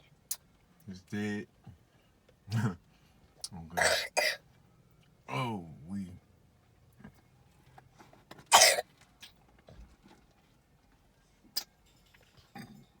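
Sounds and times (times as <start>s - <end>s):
girl coughing: 3.8s - 4.4s, 8.5s - 8.8s.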